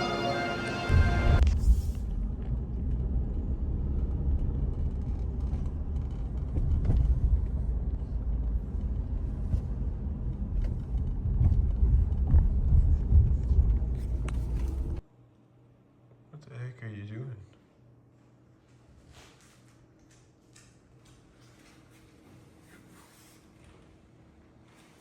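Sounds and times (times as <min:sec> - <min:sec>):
car road and engine rumble: 0:00.4 - 0:15.0.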